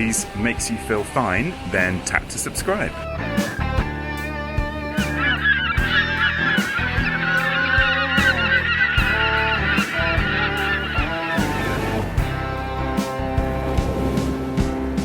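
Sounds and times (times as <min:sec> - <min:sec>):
background music with beat: 0:03.0 - 0:15.0
flock of birds calling: 0:04.9 - 0:12.4.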